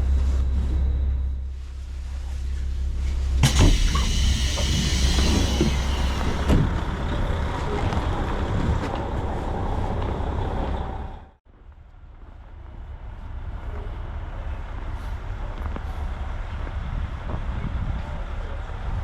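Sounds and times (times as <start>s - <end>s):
train engine rumbling: 0.0s - 11.4s, 12.0s - 19.0s
compressed air hiss: 3.4s - 6.6s.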